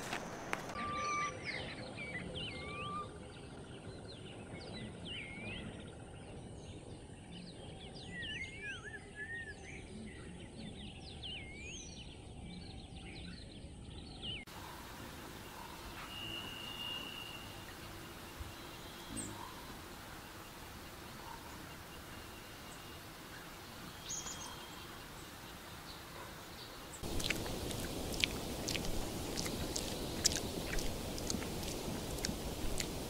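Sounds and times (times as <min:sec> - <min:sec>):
birds chirping: 0:00.0 - 0:33.0
low background rumble: 0:27.0 - 0:33.0.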